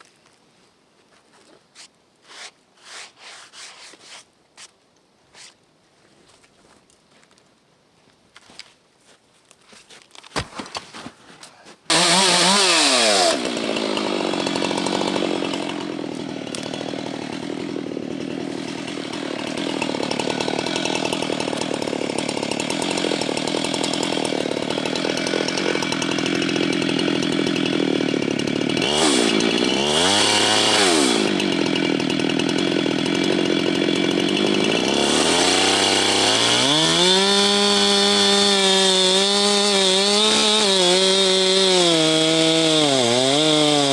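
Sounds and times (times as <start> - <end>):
chainsaw cutting wood: 11.9 - 43.9.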